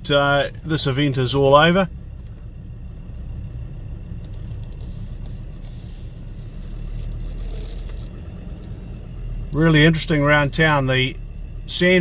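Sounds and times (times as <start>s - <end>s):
vehicle engine and road rumble: 0.0s - 12.0s
brief hiss: 4.8s - 6.4s.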